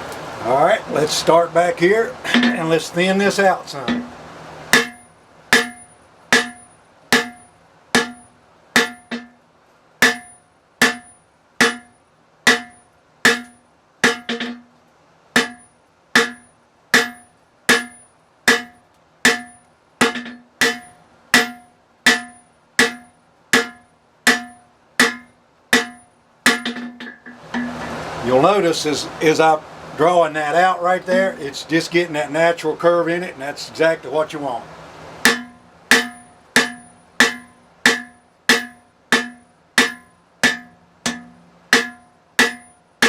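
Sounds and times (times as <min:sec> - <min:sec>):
hammer striking steel on anvil: 0:02.3 - 0:02.8, 0:03.8 - 0:09.4, 0:10.0 - 0:14.7, 0:15.4 - 0:28.0, 0:31.0 - 0:31.4, 0:35.2 - 0:42.9.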